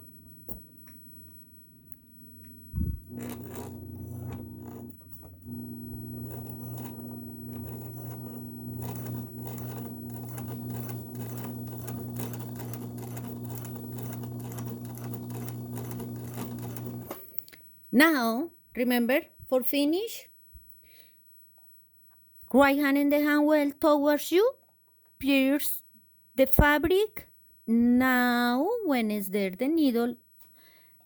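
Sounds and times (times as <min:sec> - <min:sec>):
sewing machine stitching: 0:02.8 - 0:17.4.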